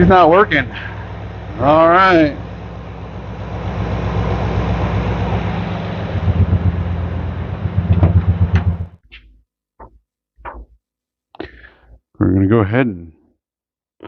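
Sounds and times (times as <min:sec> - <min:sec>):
pickup engine idling: 0:00.0 - 0:08.9
short knocks: 0:07.6 - 0:09.0.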